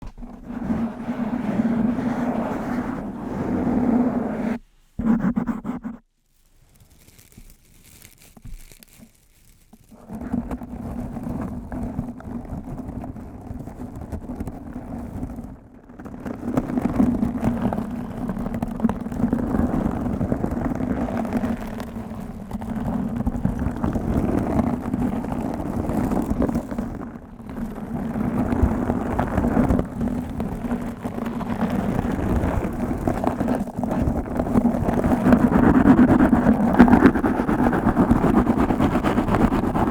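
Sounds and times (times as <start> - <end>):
fingers scratching a microphone: 0.0 - 6.1, 7.0 - 39.9.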